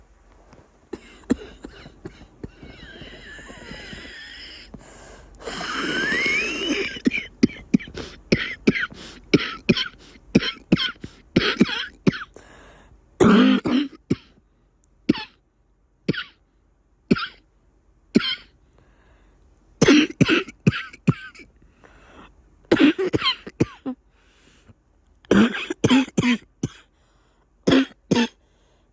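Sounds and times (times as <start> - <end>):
person coughing congested: 0.9 - 4.8, 5.4 - 12.4, 13.2 - 14.4, 15.1 - 15.4, 16.1 - 16.4, 17.1 - 17.4, 18.2 - 18.5, 19.8 - 21.5, 22.7 - 24.0, 25.3 - 26.9, 27.7 - 28.4.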